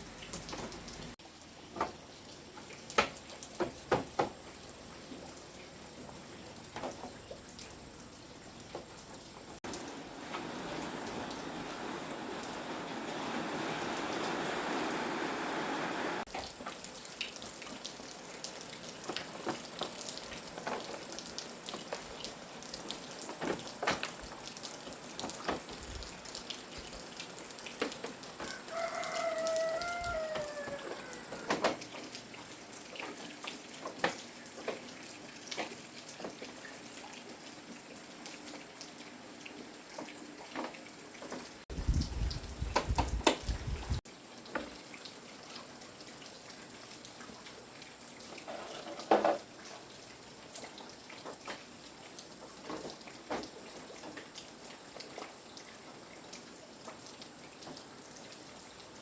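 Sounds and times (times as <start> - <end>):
rooster crowing: 28.4 - 31.7.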